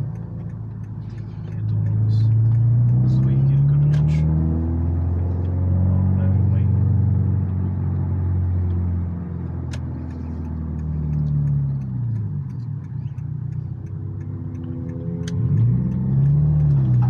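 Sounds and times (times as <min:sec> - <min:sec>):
car engine revving: 0:00.0 - 0:17.0.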